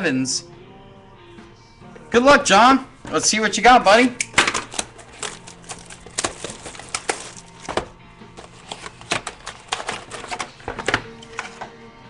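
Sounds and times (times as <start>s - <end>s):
faint background music: 0.0s - 12.0s
cardboard packaging tearing: 4.6s - 10.6s.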